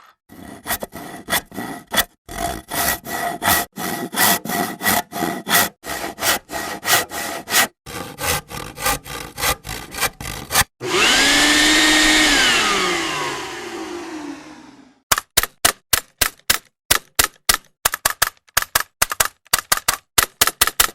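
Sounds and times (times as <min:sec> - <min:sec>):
hand saw cutting wood: 0:00.0 - 0:15.0
electric power tool running: 0:10.8 - 0:15.0.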